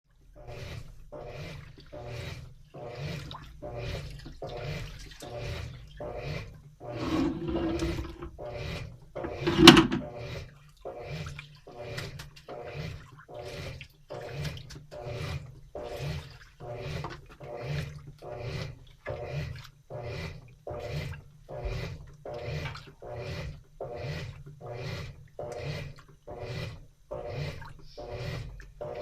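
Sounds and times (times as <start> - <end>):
washing machine agitator swishing water: 0.0 - 29.0
washing machine knock: 9.2 - 10.1.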